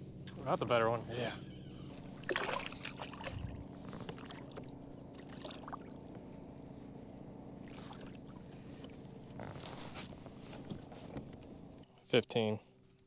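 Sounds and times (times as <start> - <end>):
rustling: 7.8 - 11.5.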